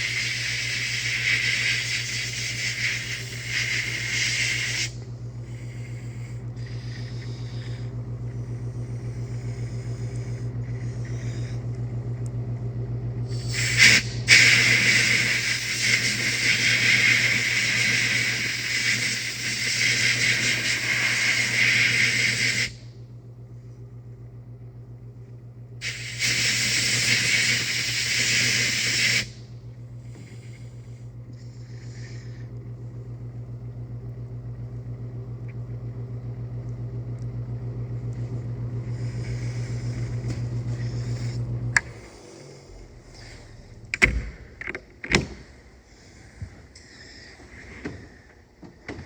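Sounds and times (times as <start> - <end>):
compressed air hissing: 0.0 - 11.7, 13.2 - 22.9, 25.8 - 32.5, 38.8 - 44.6, 45.4 - 48.3
pulsing motor hum: 0.0 - 49.0.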